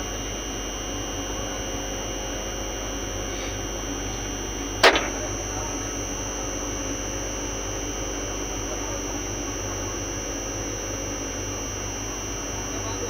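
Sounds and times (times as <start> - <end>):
electrical contactor humming: 3.1 - 6.2
sharp knock: 4.8 - 5.6.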